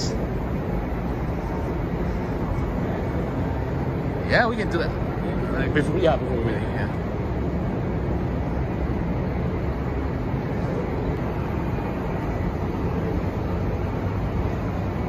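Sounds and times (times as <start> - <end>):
low exhaust drone: 0.0 - 15.0.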